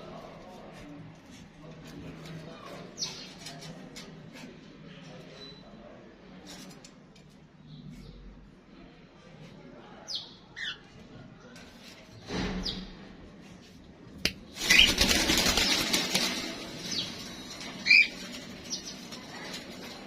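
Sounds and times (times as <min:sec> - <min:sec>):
wings flapping: 0:14.5 - 0:20.0.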